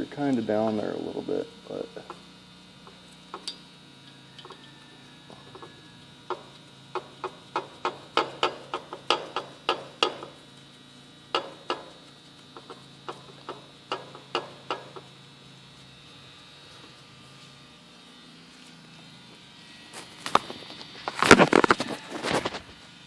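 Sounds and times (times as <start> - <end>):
steady low hum: 0.0 - 23.0
ratchet wrench clicking: 2.8 - 15.1.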